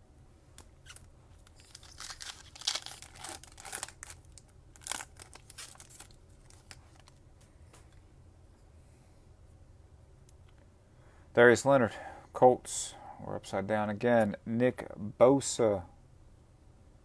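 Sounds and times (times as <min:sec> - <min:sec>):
wrapper crinkling and tearing: 0:00.8 - 0:07.2.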